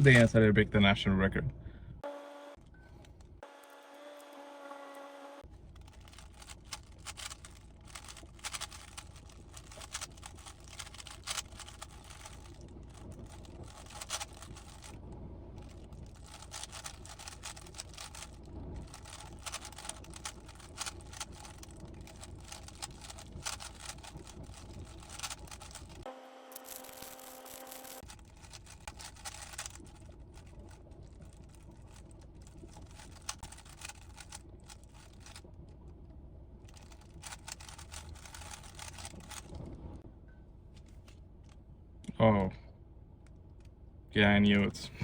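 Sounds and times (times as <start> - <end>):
puzzle cube plastic clicks: 5.8 - 15.0, 15.6 - 26.0, 26.6 - 35.4, 36.7 - 39.5.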